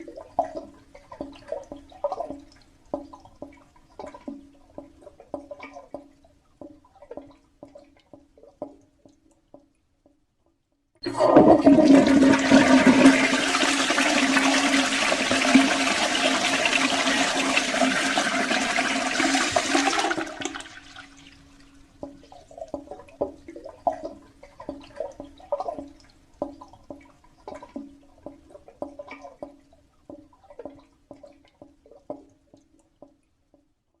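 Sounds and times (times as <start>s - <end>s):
water dripping and gurgling: 0.0s - 33.8s
toilet flushing: 11.0s - 21.4s.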